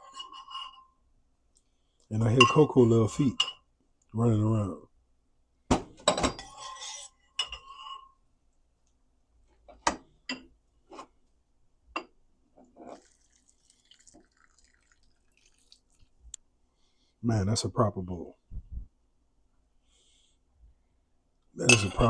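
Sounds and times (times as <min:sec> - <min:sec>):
spoon clinking in a bowl: 0:02.4 - 0:02.7.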